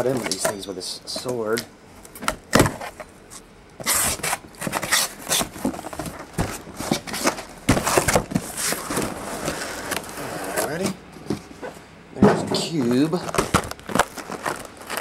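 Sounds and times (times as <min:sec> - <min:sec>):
cardboard rustling: 0:03.8 - 0:11.4, 0:12.7 - 0:15.0.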